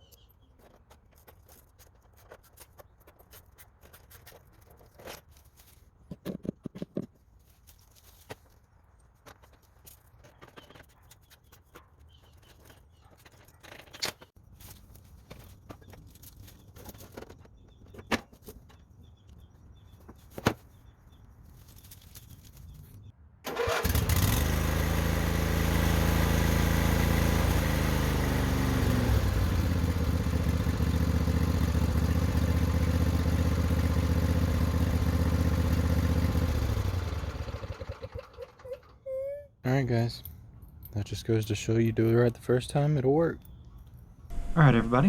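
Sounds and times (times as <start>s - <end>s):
riding mower engine running: 23.5s - 38.6s.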